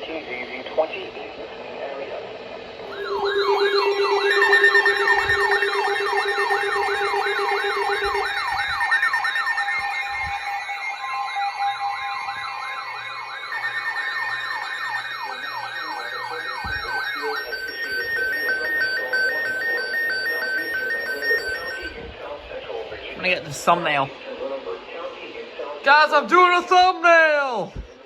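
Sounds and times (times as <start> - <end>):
steady electronic tones: 2.8 - 22.1
electronic siren yelping: 2.9 - 22.0.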